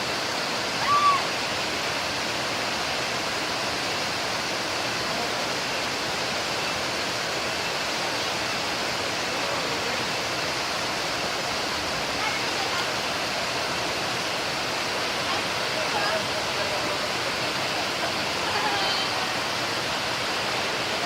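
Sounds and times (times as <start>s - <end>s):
waterfall rushing water: 0.0s - 21.0s
high-pitched cry: 0.8s - 1.3s.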